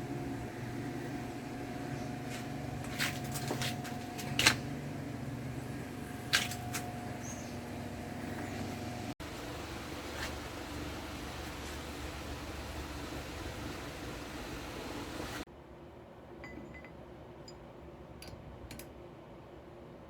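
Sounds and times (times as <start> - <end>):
electric motor humming: 0.0 - 15.4.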